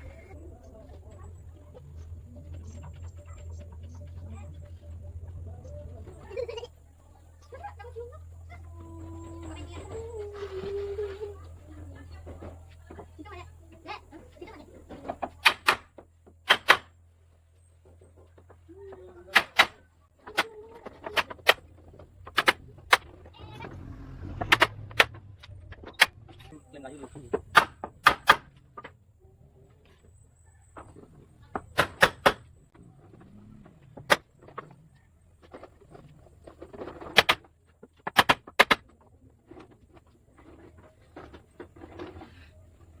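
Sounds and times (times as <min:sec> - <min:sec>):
low steady hum: 0:00.0 - 0:37.9
light clattering and rustling: 0:32.6 - 0:43.0.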